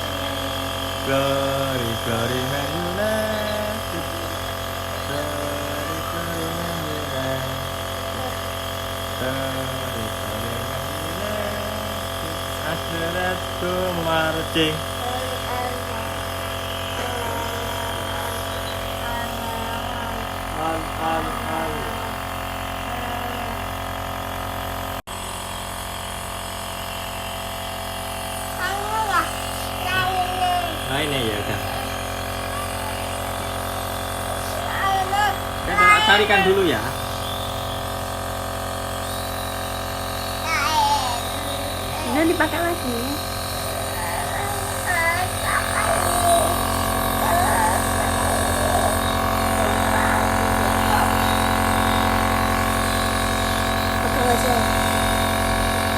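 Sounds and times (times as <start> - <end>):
small electric motor humming: 0.0 - 55.9.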